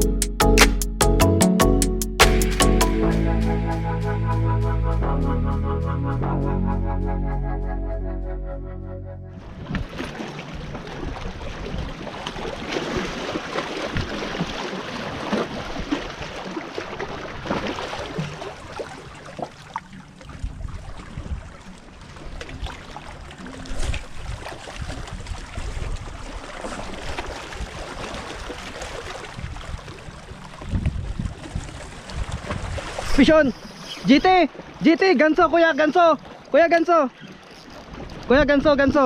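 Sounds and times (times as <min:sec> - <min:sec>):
wind rumble on microphone: 0:09.3 - 0:14.4, 0:20.3 - 0:21.6, 0:23.6 - 0:33.5, 0:37.9 - 0:39.0
water splashing: 0:09.4 - 0:39.0.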